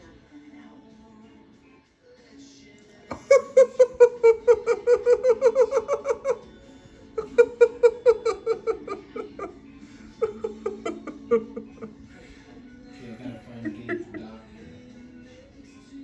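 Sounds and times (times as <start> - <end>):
person laughing hard: 3.1 - 6.5, 7.2 - 12.0, 13.5 - 14.3.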